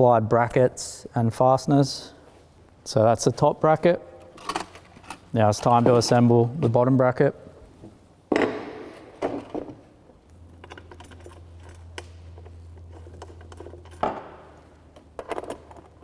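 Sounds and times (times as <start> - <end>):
metal parts clinking and knocking: 4.2 - 6.1, 10.4 - 16.0.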